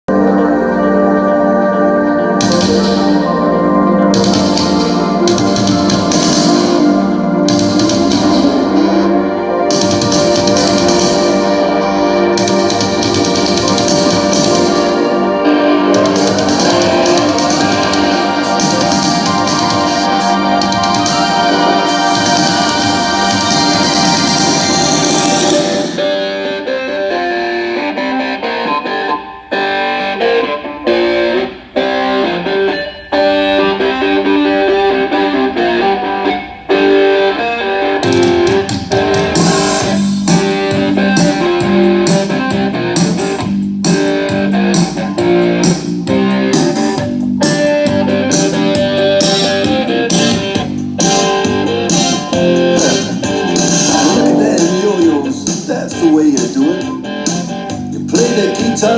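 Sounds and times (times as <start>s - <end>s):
loud rock music with electric guitar: 0.2s - 58.9s
bass and drums: 2.4s - 3.2s, 4.2s - 9.1s, 9.7s - 15.1s, 15.7s - 26.2s, 38.0s - 58.9s.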